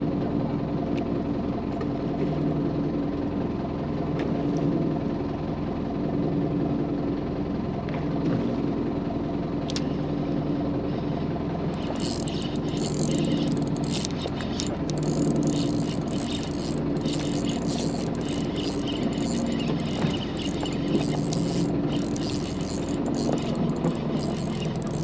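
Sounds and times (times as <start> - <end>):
boat engine idling: 11.7 - 25.0.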